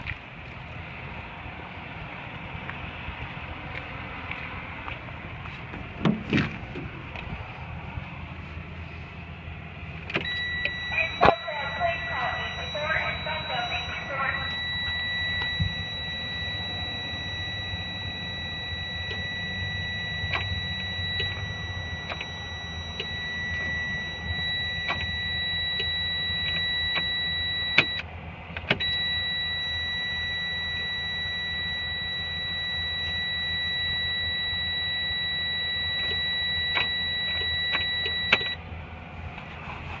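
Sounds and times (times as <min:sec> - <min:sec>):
constant low rumble: 0:00.0 - 0:40.0
high-pitched warning buzzer: 0:10.2 - 0:28.0, 0:28.8 - 0:38.6.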